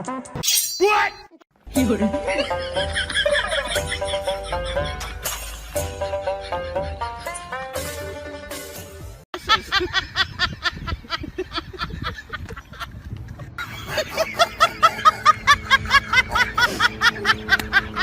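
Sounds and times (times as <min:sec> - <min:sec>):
background music: 0:01.7 - 0:09.2.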